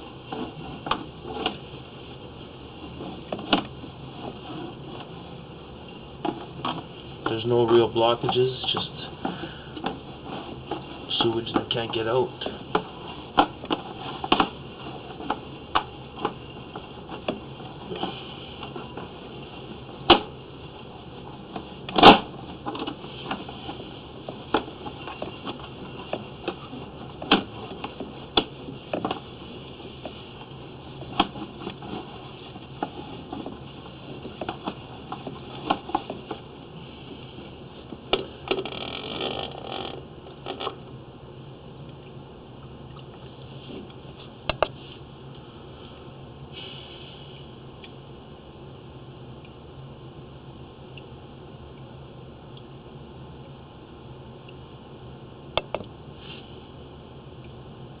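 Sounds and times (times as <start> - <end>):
steady high hiss: 0.0 - 58.0
sharp clicks and knocks: 2.9 - 5.1, 44.5 - 44.8, 55.6 - 56.0.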